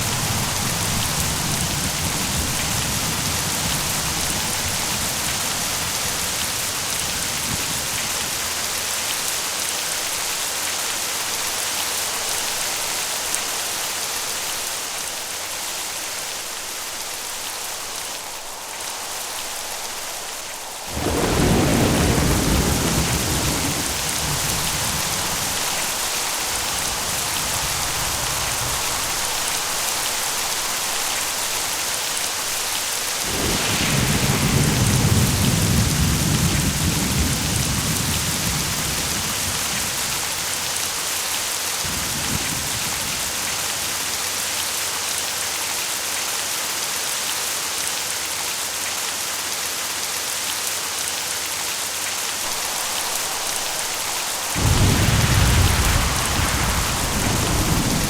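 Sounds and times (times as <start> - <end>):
thunder rumbling: 0.0 - 9.2, 16.3 - 40.9, 52.4 - 58.0
steady rain: 0.0 - 58.0.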